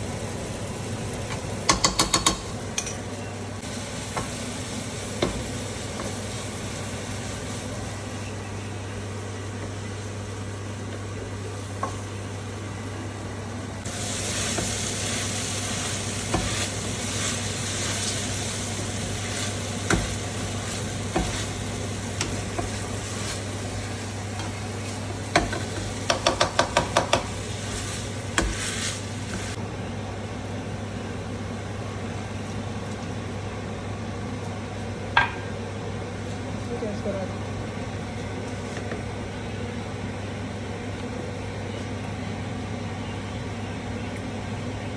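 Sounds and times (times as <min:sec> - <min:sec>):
eggs sizzling in a frying pan: 0:00.0 - 0:33.8
utensil tapping on pan: 0:01.7 - 0:03.0, 0:19.9 - 0:20.2, 0:25.3 - 0:27.4, 0:35.2 - 0:35.5.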